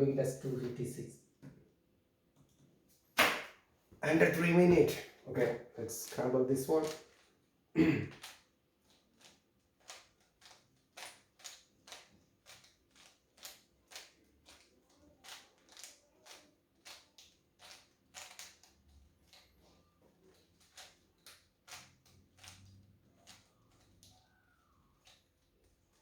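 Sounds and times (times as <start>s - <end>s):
puzzle cube plastic clacking: 5.9s - 7.3s, 8.1s - 19.6s, 20.2s - 26.0s.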